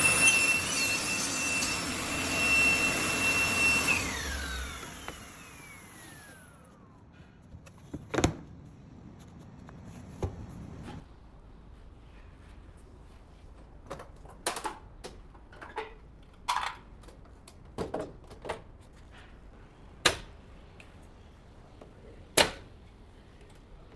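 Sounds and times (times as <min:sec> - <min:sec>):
saw blade spinning down: 0:00.0 - 0:06.9
table saw whine: 0:00.0 - 0:07.0.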